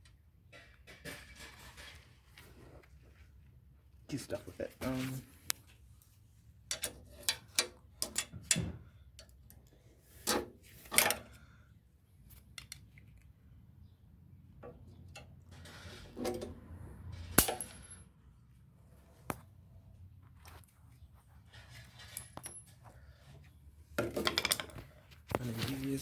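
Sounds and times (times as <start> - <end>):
hand tools clicking and clanking: 6.7 - 8.6, 10.2 - 11.3, 24.0 - 24.9
rustling scrape: 15.5 - 16.4, 20.3 - 23.3.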